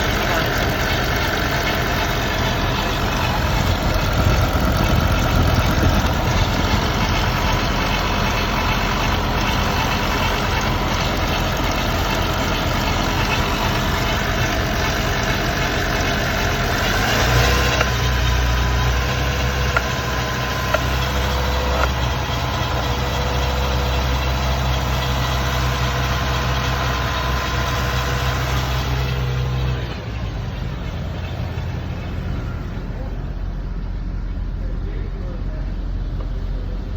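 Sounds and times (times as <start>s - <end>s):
steady whine: 0.0s - 16.7s
engine running: 0.0s - 36.9s.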